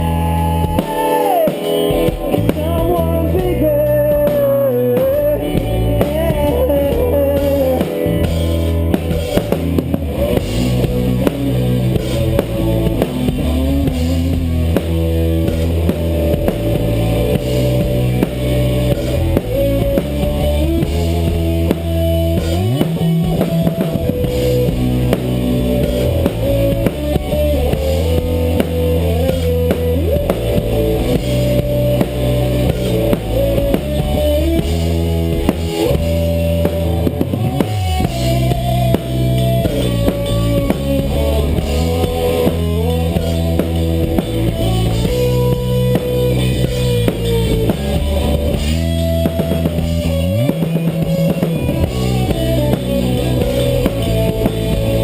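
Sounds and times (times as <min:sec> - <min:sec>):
band playing live: 0:00.0 - 0:55.0
bass drum thumps: 0:01.9 - 0:55.0.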